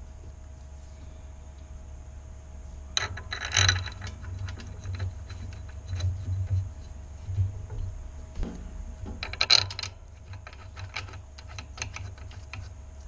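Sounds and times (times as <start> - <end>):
steady low hum: 0.0 - 13.0
metallic clicking of hand tool: 9.1 - 12.7.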